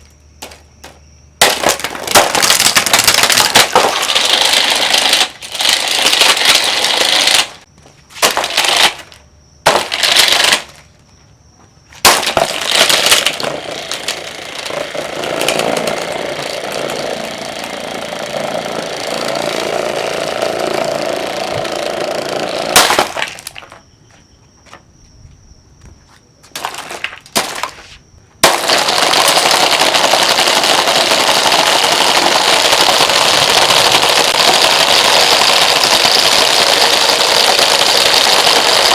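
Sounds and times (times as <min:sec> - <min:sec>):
plastic cracking and clattering: 0:00.4 - 0:07.6, 0:08.2 - 0:10.8, 0:12.0 - 0:23.8, 0:28.4 - 0:38.9
steady loud noise: 0:12.0 - 0:23.6.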